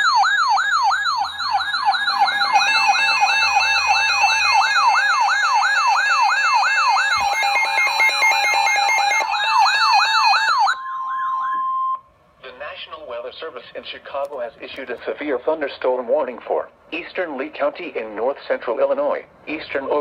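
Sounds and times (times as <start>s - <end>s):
electronic siren yelping: 0.0s - 12.1s
steady tone: 7.1s - 12.2s
stepping higher beeping tone: 7.2s - 12.1s.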